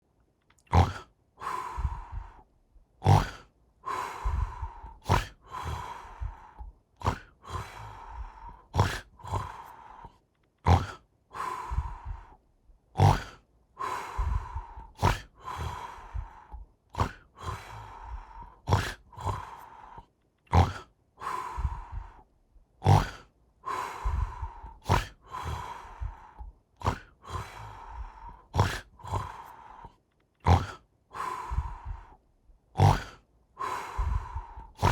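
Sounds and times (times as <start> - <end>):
cartoon snoring with whistle: 0.7 - 2.4, 3.0 - 3.5, 4.1 - 6.4, 7.0 - 9.8, 10.6 - 12.2, 13.0 - 13.4, 14.2 - 16.4, 17.0 - 19.6, 20.5 - 22.1, 22.8 - 23.3, 24.0 - 26.2, 26.8 - 29.8, 30.4 - 32.0, 32.8 - 34.9.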